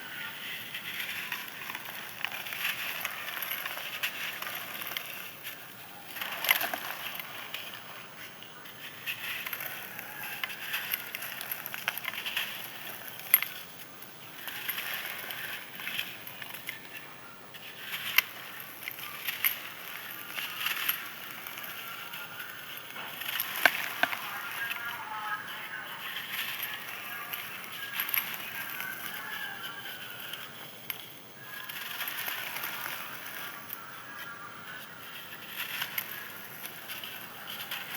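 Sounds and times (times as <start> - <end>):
dry sand crust crunching: 0.0 - 37.9.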